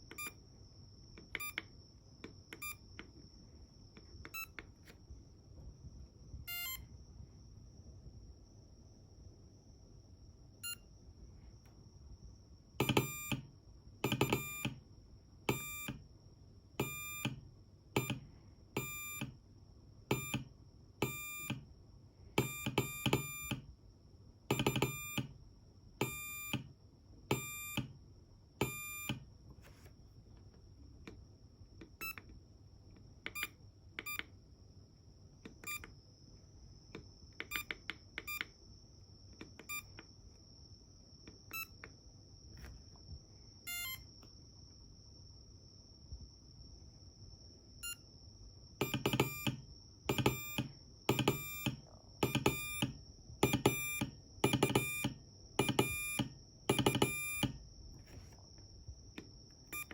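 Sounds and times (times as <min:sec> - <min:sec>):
faint high whine: 0:00.0 - 0:19.4
morse code beeps: 0:00.1 - 0:00.4, 0:04.3 - 0:04.6, 0:06.5 - 0:06.8, 0:12.8 - 0:14.8, 0:15.5 - 0:16.0, 0:16.8 - 0:17.4, 0:18.8 - 0:19.4, 0:20.1 - 0:21.6, 0:24.5 - 0:25.3, 0:28.6 - 0:29.2, 0:43.7 - 0:44.0, 0:48.8 - 0:57.6.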